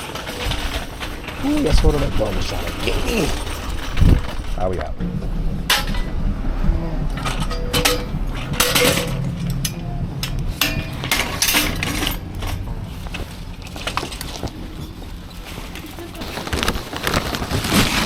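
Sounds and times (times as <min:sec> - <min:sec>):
low steady rumble: 0:00.0 - 0:17.6
hand truck metal clinks and knocks: 0:07.2 - 0:16.4.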